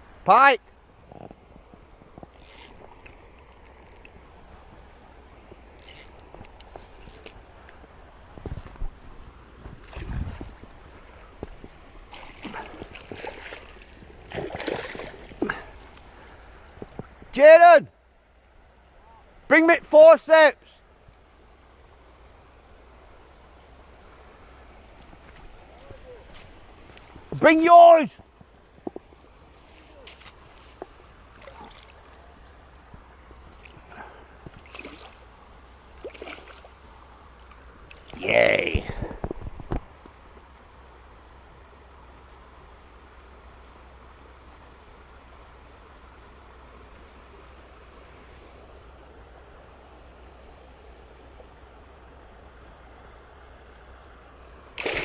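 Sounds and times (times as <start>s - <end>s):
water sloshing and splashing: 9.6s - 17.3s, 28.8s - 32.4s, 33.4s - 38.3s, 54.8s - 55.0s
fish thrashing in water: 12.1s - 15.9s, 33.6s - 35.2s, 36.0s - 36.7s, 54.8s - 55.0s.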